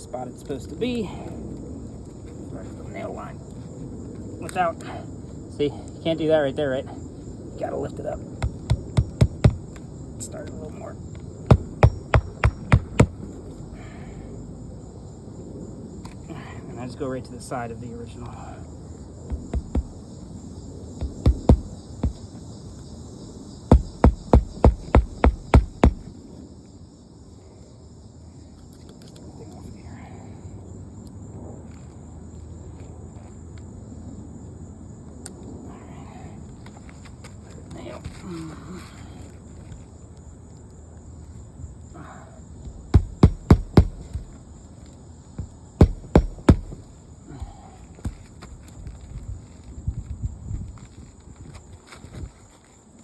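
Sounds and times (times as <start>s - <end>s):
insect chirring: 1.6s - 29.8s, 39.5s - 49.2s
hammer driving a nail: 8.4s - 9.7s, 11.5s - 13.2s, 19.3s - 20.0s, 21.0s - 22.3s, 23.7s - 26.1s, 42.9s - 44.3s, 45.8s - 46.8s.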